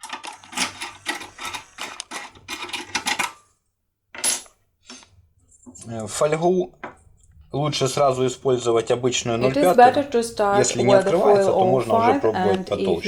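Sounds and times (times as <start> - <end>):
metal tools clinking and rattling: 0.0 - 3.4, 4.2 - 4.5.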